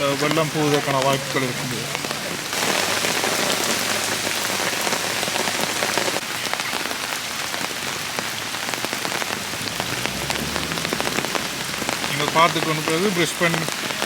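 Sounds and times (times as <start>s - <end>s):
heavy rain falling: 0.0s - 14.0s
raindrops pattering close: 0.0s - 14.0s.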